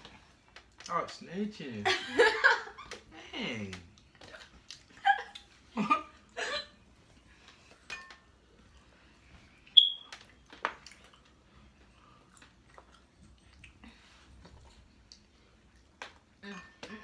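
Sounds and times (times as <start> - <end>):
dishes and cutlery clicking: 7.8 - 8.3.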